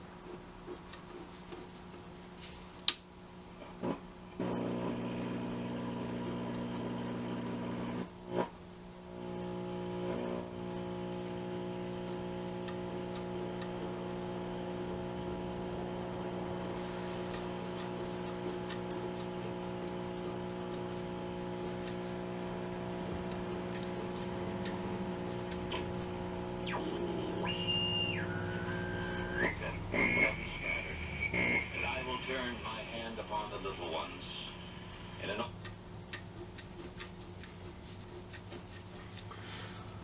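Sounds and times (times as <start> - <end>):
radio speaker hum: 9.1 - 36.0.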